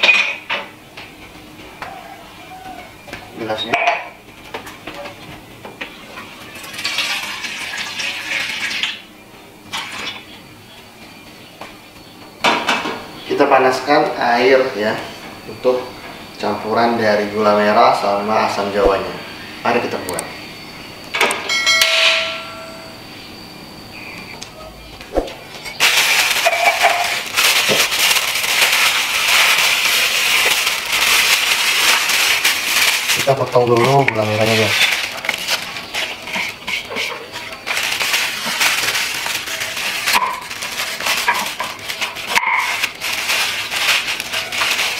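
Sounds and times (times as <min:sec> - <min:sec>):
kitchenware clinking: 0:00.0 - 0:00.8, 0:03.6 - 0:04.2, 0:21.2 - 0:23.0, 0:25.6 - 0:35.1, 0:36.2 - 0:42.9
water filling a container: 0:06.3 - 0:09.0
stove burner crackling hiss: 0:25.6 - 0:44.9.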